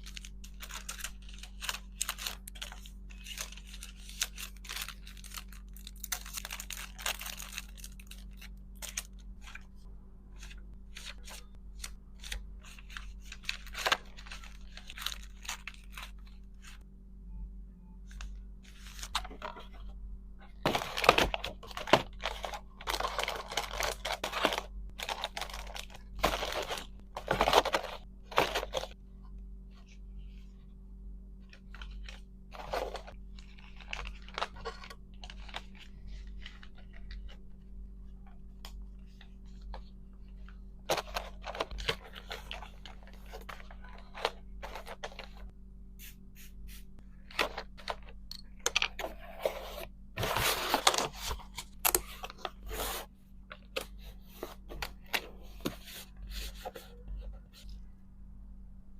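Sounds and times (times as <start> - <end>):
packaging crinkling and tearing: 0.0 - 9.6, 20.7 - 29.0
faint hum: 0.0 - 58.9.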